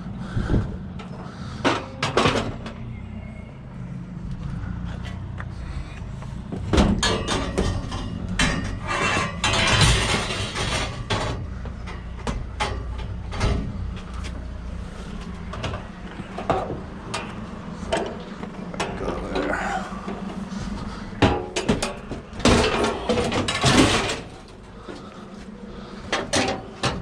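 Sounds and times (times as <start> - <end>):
scrap metal clanking: 6.5 - 27.0.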